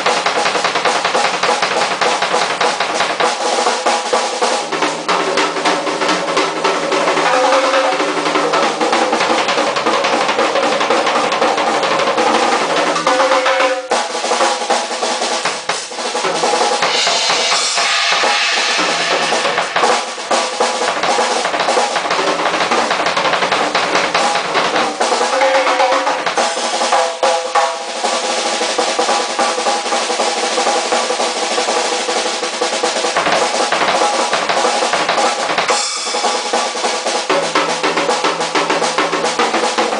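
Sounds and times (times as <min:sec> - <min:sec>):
drum kit playing: 0:00.0 - 0:39.9
cymbals crashing: 0:16.4 - 0:21.3, 0:35.7 - 0:37.1.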